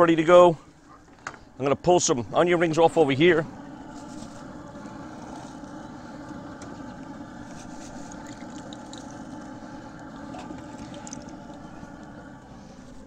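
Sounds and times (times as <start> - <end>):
gas griddle burner rushing: 2.4 - 13.0
food crackling on griddle: 3.2 - 12.8.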